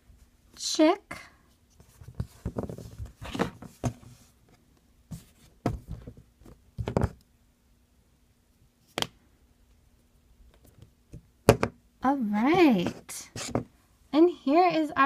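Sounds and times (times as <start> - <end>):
plastic stamper thumping dough: 11.4 - 11.8.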